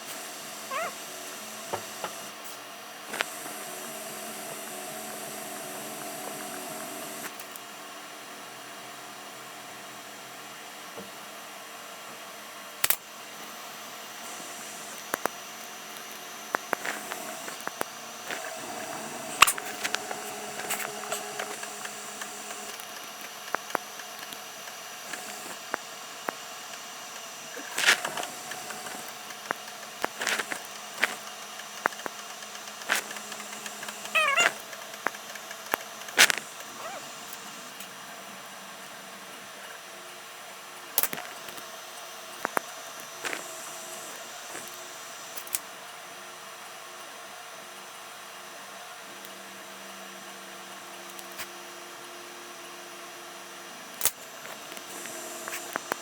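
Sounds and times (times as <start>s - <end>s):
short wavering pitched call: 0.7s - 1.0s, 34.1s - 34.6s
sharp clicks and taps: 28.6s - 36.7s.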